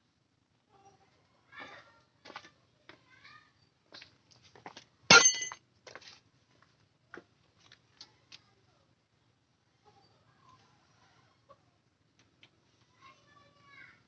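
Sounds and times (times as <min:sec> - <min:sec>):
loud ringing metallic clink: 0:05.1 - 0:05.6
metal parts and tools clinking: 0:05.1 - 0:05.6.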